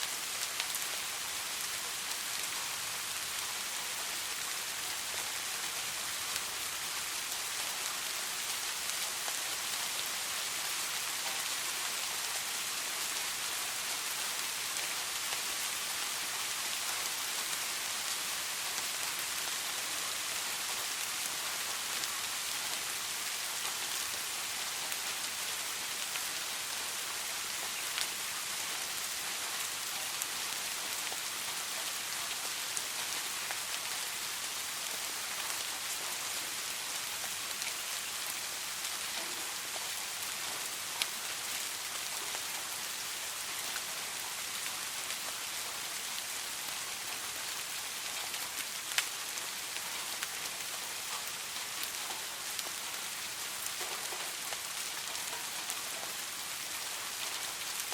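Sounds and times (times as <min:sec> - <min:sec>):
steady soft rain hissing: 0:00.0 - 0:57.9.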